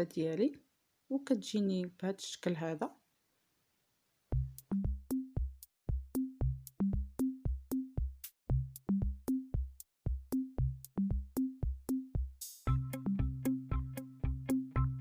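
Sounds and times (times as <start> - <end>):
drum-machine beat: 4.3 - 15.0
bouncing bass line: 4.4 - 15.0.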